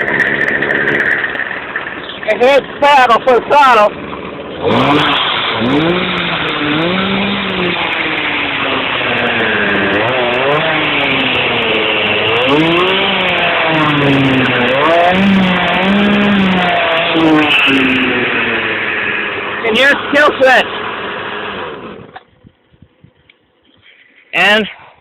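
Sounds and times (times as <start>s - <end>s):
go-kart engine revving: 0.0s - 24.9s.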